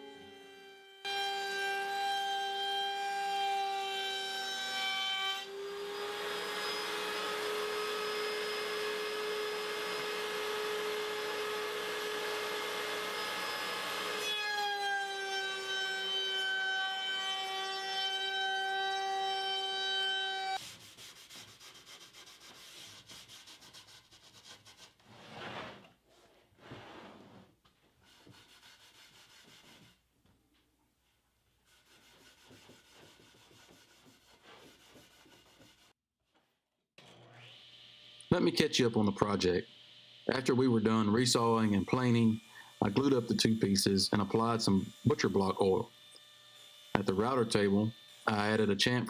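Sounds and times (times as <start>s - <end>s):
saw rasping through board: 18.0s - 25.8s, 28.0s - 30.0s, 31.6s - 36.0s, 40.4s - 49.0s.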